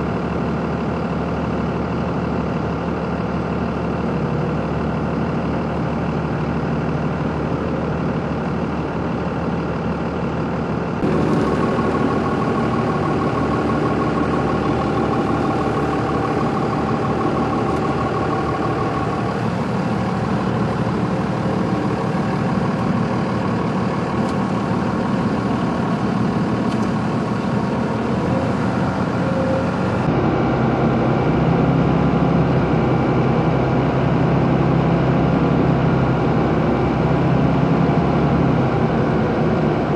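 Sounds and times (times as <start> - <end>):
road noise: 0.0 - 39.9
vehicle engine running: 0.0 - 39.9.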